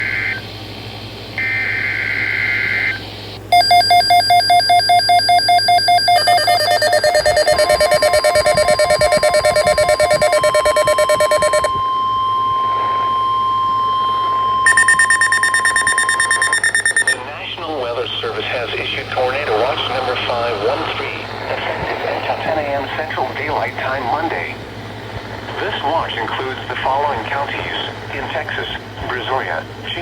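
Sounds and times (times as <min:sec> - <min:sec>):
steady single-pitch warning tone: 0:00.0 - 0:17.3
rapid pulsing alarm beeps: 0:01.4 - 0:17.3
harsh warbling data burst: 0:05.0 - 0:11.7, 0:14.6 - 0:17.2.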